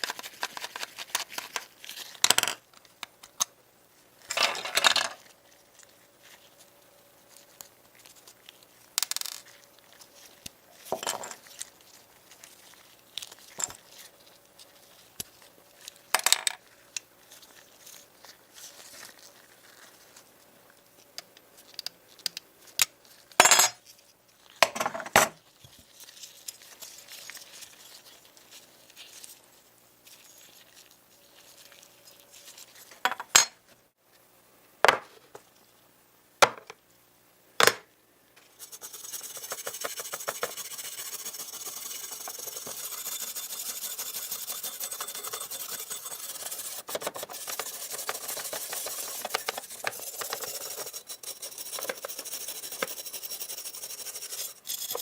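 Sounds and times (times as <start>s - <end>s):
metal parts clattering: 4.3s - 5.2s.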